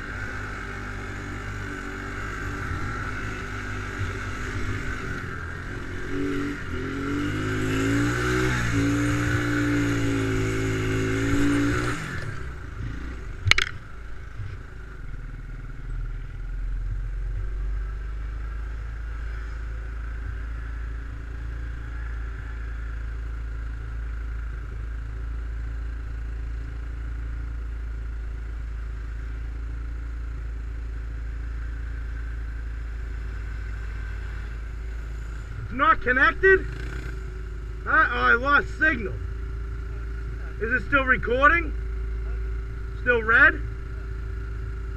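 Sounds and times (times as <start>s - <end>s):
atv engine revving and idling: 0.0s - 44.9s.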